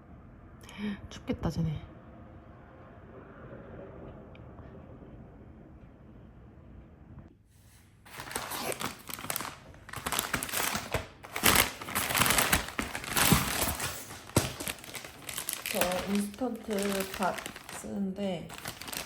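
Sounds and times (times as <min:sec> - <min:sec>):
packaging crinkling and rustling: 0:08.1 - 0:19.0.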